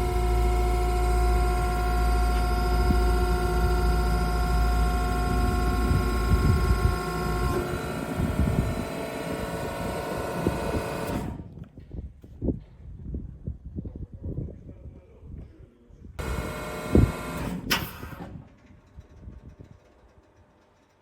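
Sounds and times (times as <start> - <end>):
deep hum: 0.0 - 11.0
hydraulic pump whining: 0.0 - 11.7, 16.2 - 19.2.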